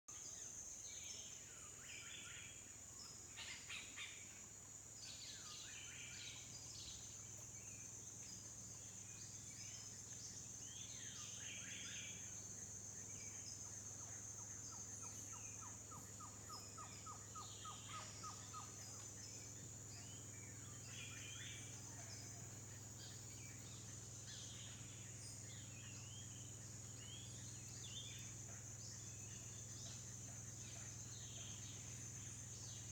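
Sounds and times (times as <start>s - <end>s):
bird calls: 14.0s - 22.3s.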